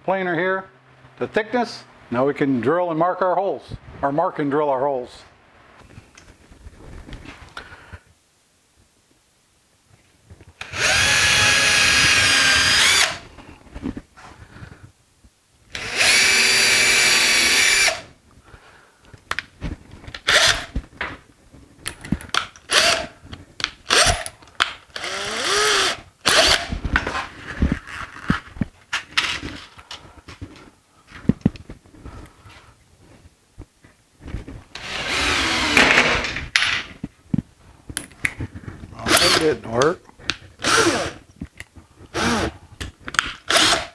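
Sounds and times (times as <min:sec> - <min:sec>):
power drill boring into wood: 0:10.6 - 0:13.2, 0:15.7 - 0:18.1, 0:20.3 - 0:20.7, 0:22.7 - 0:23.1, 0:23.9 - 0:24.2, 0:24.9 - 0:26.7, 0:34.8 - 0:36.2, 0:39.1 - 0:39.6, 0:40.6 - 0:41.2, 0:42.1 - 0:42.6, 0:43.4 - 0:43.9.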